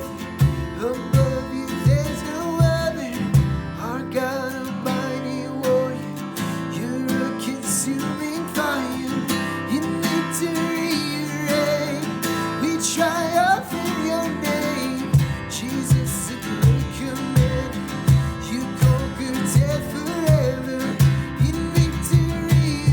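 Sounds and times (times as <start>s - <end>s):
strummed acoustic guitar: 0.0s - 22.9s.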